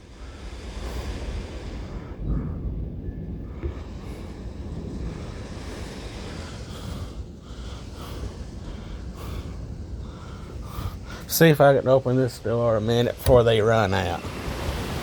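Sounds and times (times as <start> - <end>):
heavy rain: 0.0 - 15.0
wind: 0.0 - 15.0.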